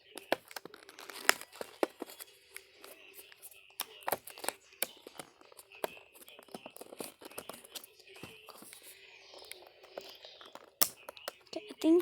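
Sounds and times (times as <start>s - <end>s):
packaging being torn open: 0.1s - 3.0s.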